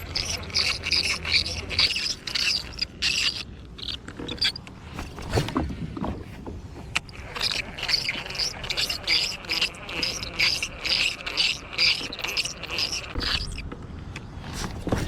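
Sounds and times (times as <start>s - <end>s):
squeaky fishing reel cranking: 0.0s - 4.8s, 7.0s - 13.8s.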